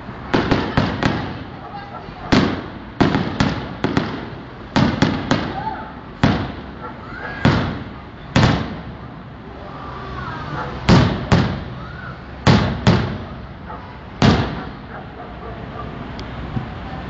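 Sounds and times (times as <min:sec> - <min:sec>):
fireworks bangs with echo: 0:00.0 - 0:09.1, 0:10.8 - 0:14.9.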